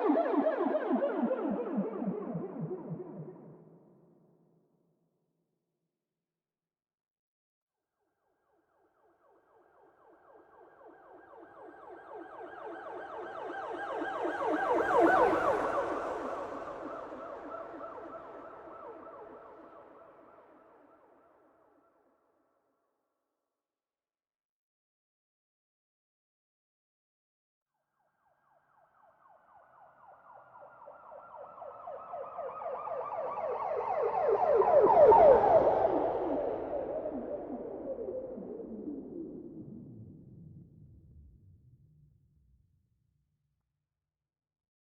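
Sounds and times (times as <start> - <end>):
police siren yelping: 30.4 - 37.9.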